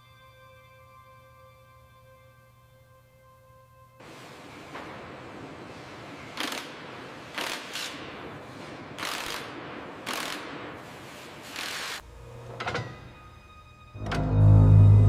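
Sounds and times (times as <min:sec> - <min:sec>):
low machine hum: 0:13.9 - 0:15.0.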